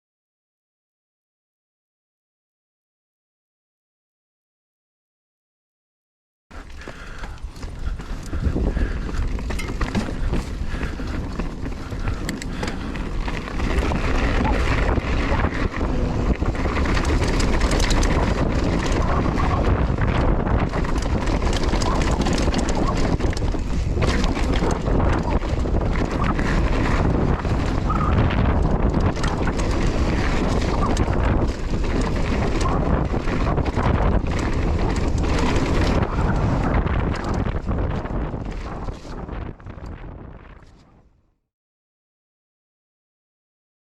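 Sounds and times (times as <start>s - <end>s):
wind buffeting microphone: 6.5s - 41.2s.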